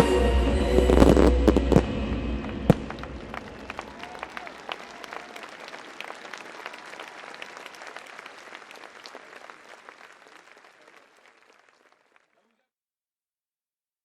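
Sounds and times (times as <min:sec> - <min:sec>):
crowd applauding: 0:02.4 - 0:12.6.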